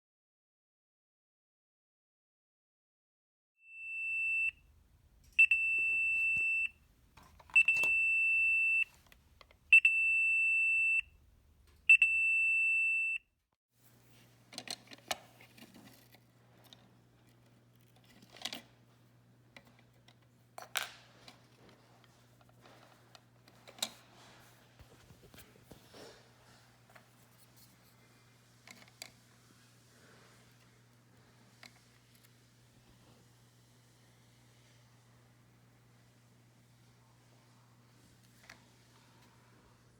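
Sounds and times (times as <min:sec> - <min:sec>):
control panel beeping: 0:05.4 - 0:06.7, 0:07.5 - 0:08.9.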